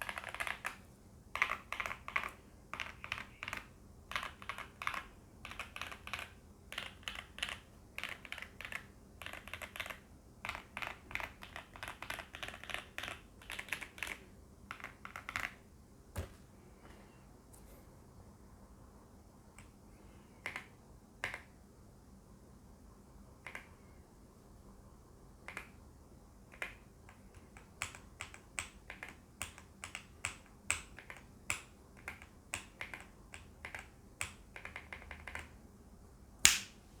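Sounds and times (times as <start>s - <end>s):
mechanical keyboard typing: 0.0s - 15.6s, 20.4s - 21.5s, 25.4s - 25.8s, 26.5s - 35.6s.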